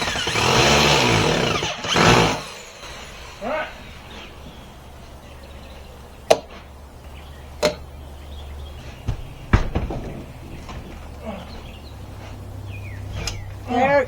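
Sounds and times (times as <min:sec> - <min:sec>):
hard knocks on wall: 0:09.0 - 0:11.8.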